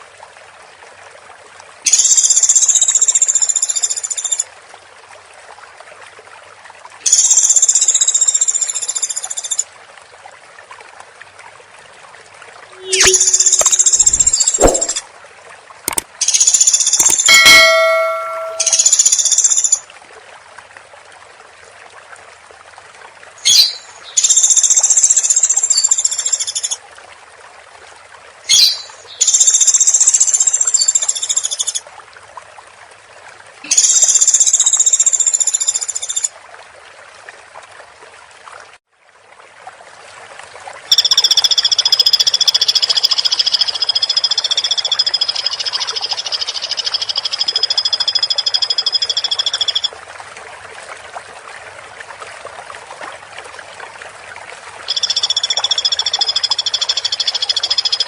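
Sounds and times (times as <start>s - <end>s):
woodpecker trilling calls: 12.8s - 15.0s, 23.4s - 24.6s.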